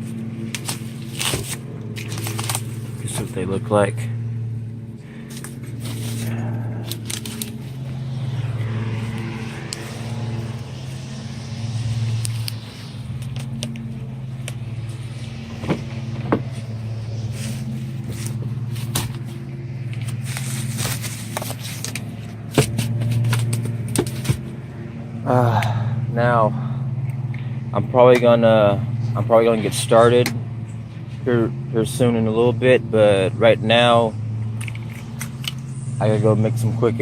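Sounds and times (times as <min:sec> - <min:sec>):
car engine idling: 0:00.0 - 0:37.0
sharp clicks and crackles: 0:05.3 - 0:08.0.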